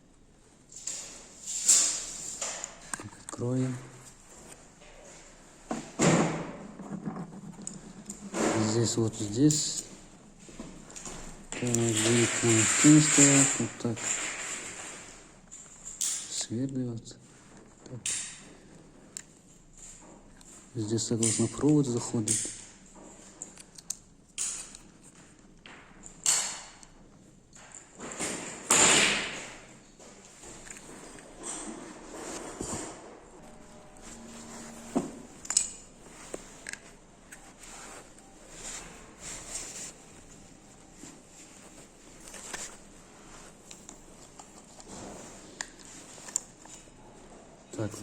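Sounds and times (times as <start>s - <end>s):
rustling scrapes: 6.6s - 9.4s, 11.7s - 15.3s, 30.2s - 46.6s.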